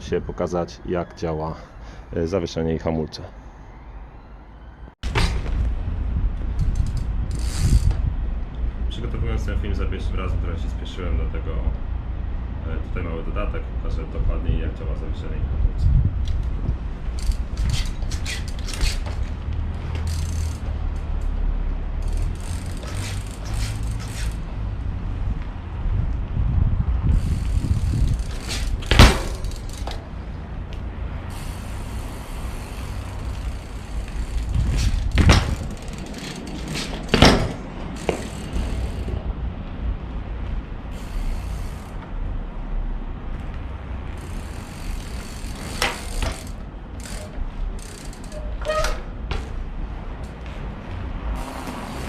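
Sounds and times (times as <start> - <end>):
bike parts clicking and rattling: 5.0 - 8.7, 15.8 - 21.4, 22.0 - 24.6, 27.1 - 39.3, 40.9 - 42.1, 43.4 - 49.6, 51.4 - 52.0
low rumble: 5.0 - 10.7
mountain bike knocking: 27.2 - 30.1, 32.5 - 39.2, 44.1 - 49.6.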